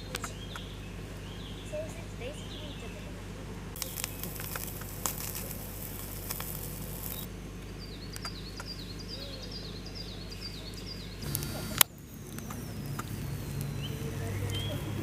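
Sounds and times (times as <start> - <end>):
bird chirping: 0.0 - 15.0
steady low hum: 0.0 - 15.0
hiss: 3.8 - 7.3.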